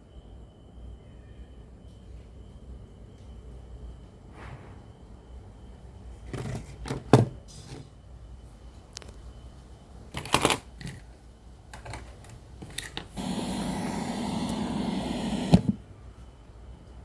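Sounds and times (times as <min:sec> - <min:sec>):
radio static hiss: 0:13.2 - 0:15.8.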